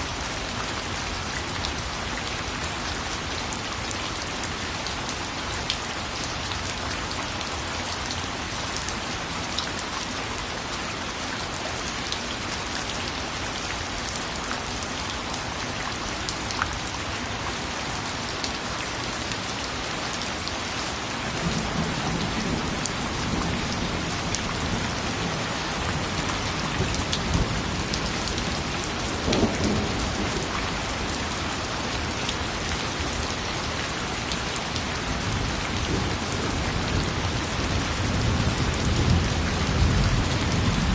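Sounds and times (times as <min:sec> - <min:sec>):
steady rain falling: 0:00.0 - 0:40.9
low rolling thunder: 0:21.4 - 0:30.6.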